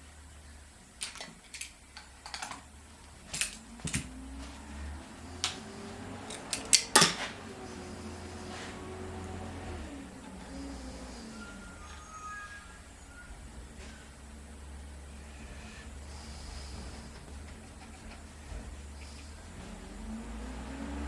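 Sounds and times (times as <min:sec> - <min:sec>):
metallic clicks of tools handled: 0:01.0 - 0:02.7, 0:03.3 - 0:04.1, 0:06.2 - 0:07.2.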